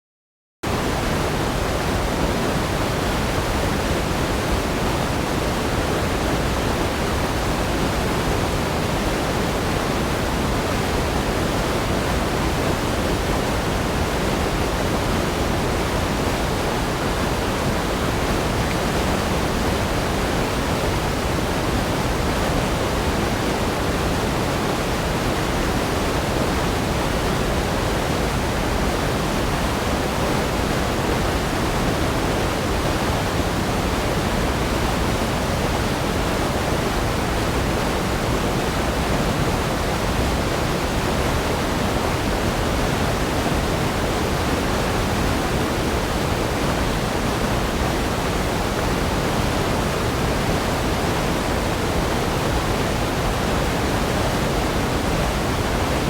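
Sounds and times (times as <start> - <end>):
waterfall rushing: 0.7 - 56.0.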